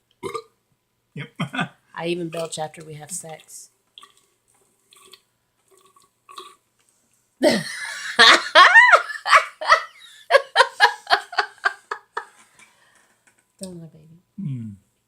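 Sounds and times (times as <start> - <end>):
person belching loudly: 0.2 - 0.5, 1.2 - 1.7
person laughing: 1.2 - 1.7, 7.4 - 12.4.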